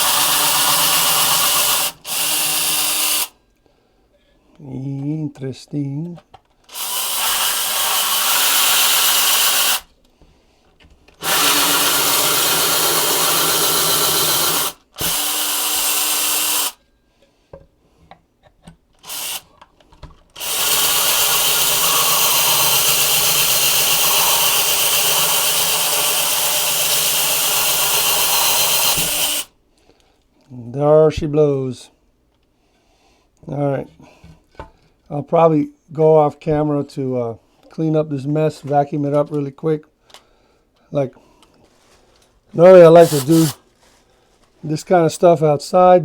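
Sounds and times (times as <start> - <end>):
electric drill boring: 0.0 - 3.3, 6.7 - 9.9, 11.2 - 16.8, 19.0 - 19.5, 20.4 - 29.5, 42.8 - 43.6.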